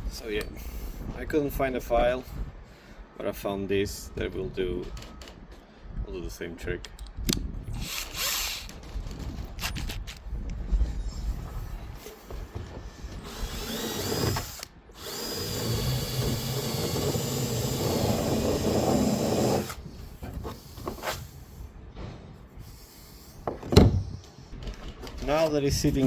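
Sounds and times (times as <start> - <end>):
power drill whining: 7.7 - 8.8, 13.1 - 19.8.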